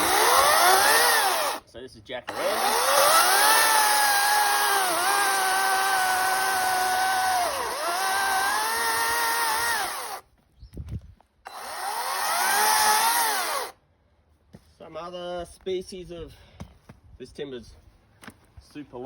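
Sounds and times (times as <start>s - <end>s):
electric chainsaw cutting wood: 0.0s - 1.6s, 2.3s - 10.2s, 11.5s - 13.8s.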